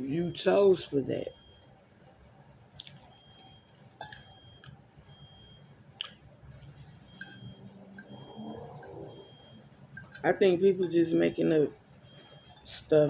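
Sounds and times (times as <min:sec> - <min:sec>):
person chewing snack: 0:02.7 - 0:03.1.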